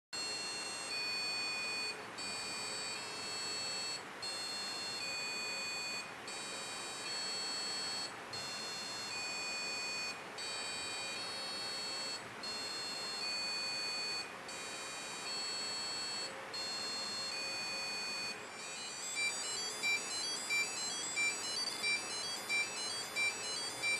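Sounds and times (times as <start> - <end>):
electronic beep sequence: 15.3 - 23.9.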